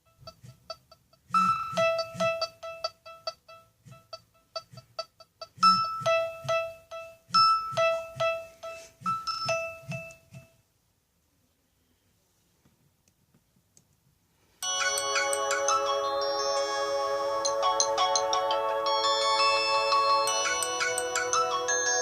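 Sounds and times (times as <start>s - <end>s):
phone ringtone melody: 14.6s - 22.0s.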